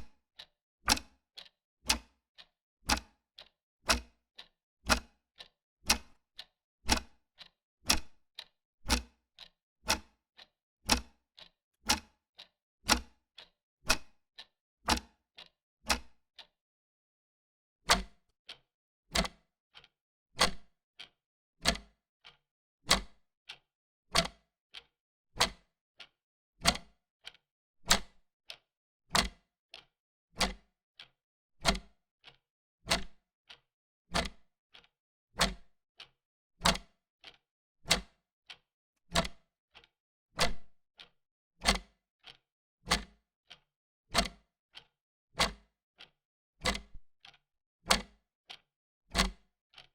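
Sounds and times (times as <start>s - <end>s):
wall clock ticking: 2.9s - 4.0s, 12.9s - 13.5s, 39.2s - 39.4s.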